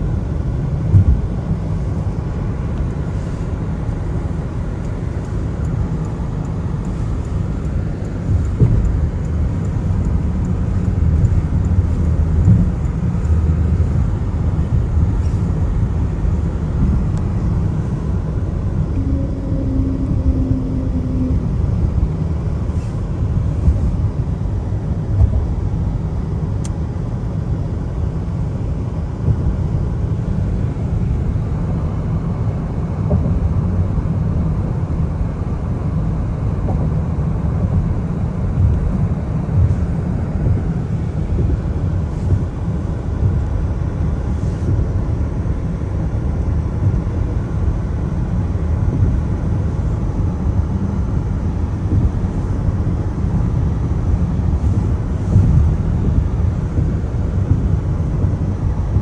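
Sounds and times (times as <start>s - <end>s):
car driving on wet road: 0.0s - 59.0s
faint tone: 18.8s - 22.0s.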